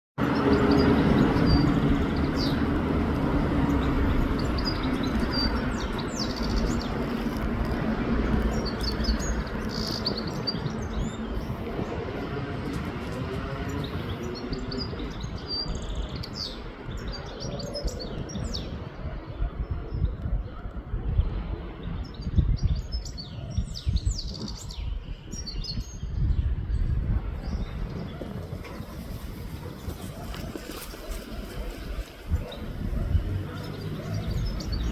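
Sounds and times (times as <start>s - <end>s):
steady low rumble: 0.2s - 23.0s
goldfinch twittering: 0.3s - 12.0s.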